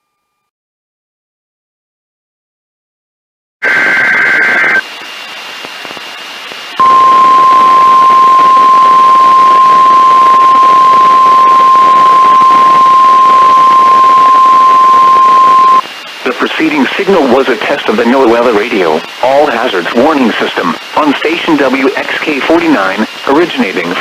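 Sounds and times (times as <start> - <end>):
radio static hiss: 3.6 - 24.0
digital header tones: 6.8 - 15.8
steady warning alarm tone: 6.8 - 15.8.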